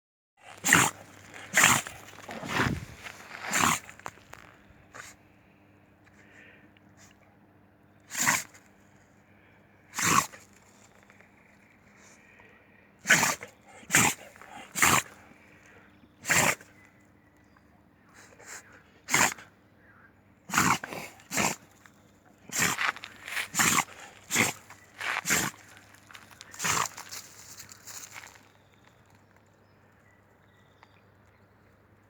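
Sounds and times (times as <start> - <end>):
dog sneezing: 0.6 - 2.8, 3.4 - 3.8, 8.1 - 8.4, 10.0 - 10.3, 13.0 - 14.2, 16.2 - 16.6, 18.5 - 19.4, 20.5 - 21.6, 22.5 - 24.6.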